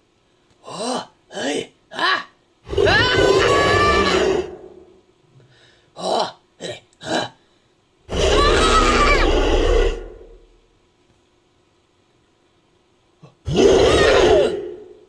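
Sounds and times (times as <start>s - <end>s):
gorilla-like creature calls: 1.9s - 4.9s, 8.1s - 10.4s, 13.2s - 15.0s.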